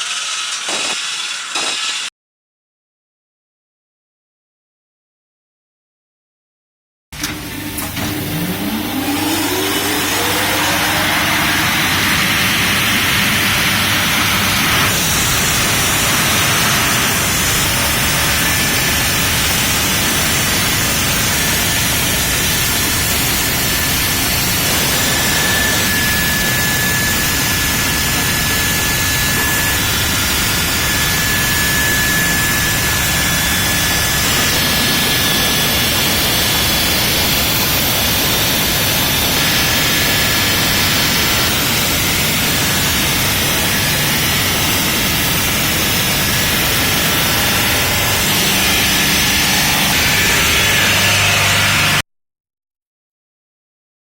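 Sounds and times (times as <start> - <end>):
concrete cutting machine running: 0.0 - 2.1, 7.2 - 52.0.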